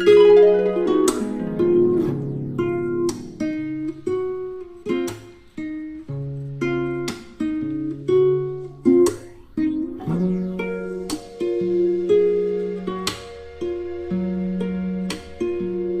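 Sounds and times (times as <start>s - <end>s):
plucked guitar notes: 0.0s - 16.0s
steady beat: 1.0s - 4.3s.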